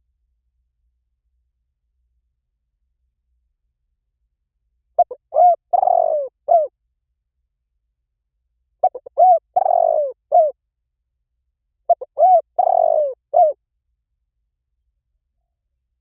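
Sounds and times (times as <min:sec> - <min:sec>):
dove cooing: 0:05.0 - 0:06.7, 0:08.8 - 0:10.6, 0:11.9 - 0:13.6.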